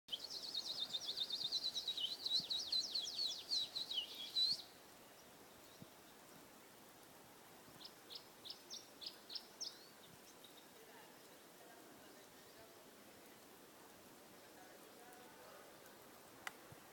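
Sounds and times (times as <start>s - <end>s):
small songbird twittering: 0.1s - 6.2s.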